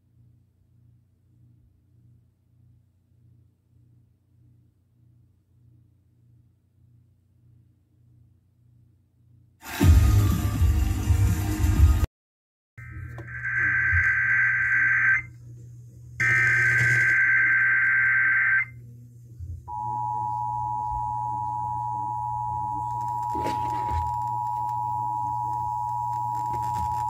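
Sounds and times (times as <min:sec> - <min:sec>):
buzzing digital data tones: 0:12.8 - 0:15.3, 0:16.2 - 0:18.8
two-tone attention signal: 0:12.8 - 0:15.3.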